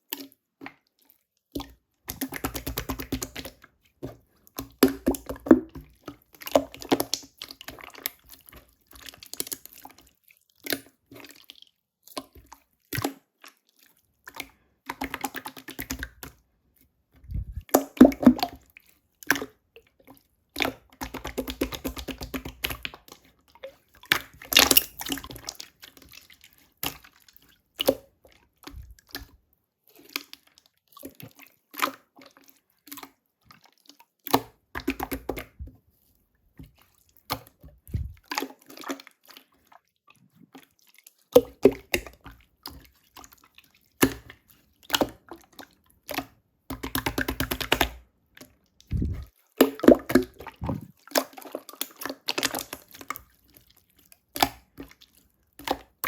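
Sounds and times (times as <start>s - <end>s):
slime squished by hand: 37.8s - 38.3s.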